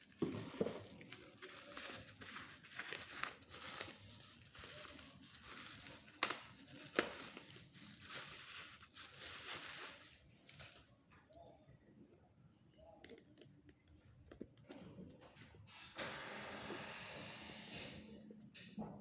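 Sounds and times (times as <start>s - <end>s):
plastic packaging crinkling: 0.0s - 11.4s.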